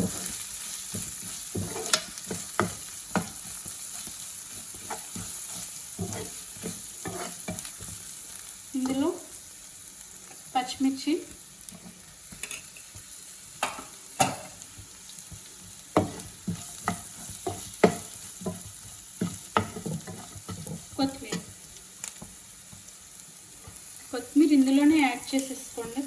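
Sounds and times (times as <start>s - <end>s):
spoon scraping a pan: 0.0s - 9.1s, 11.6s - 14.6s, 15.4s - 22.9s
food sizzling in a frying pan: 0.0s - 26.0s.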